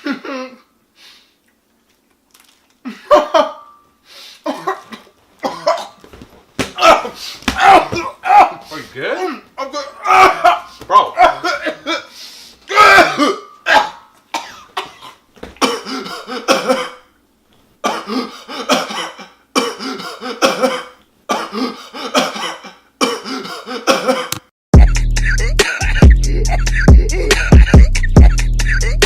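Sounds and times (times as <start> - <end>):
person choking and coughing: 2.9 - 3.6, 4.5 - 6.0, 10.2 - 12.1, 12.7 - 17.1, 17.8 - 24.5, 25.4 - 28.0
hip-hop beat with deep bass: 24.8 - 29.0.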